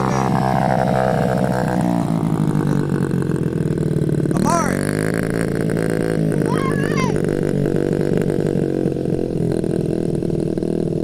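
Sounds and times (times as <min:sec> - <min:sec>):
dirt bike engine running: 0:00.0 - 0:11.0.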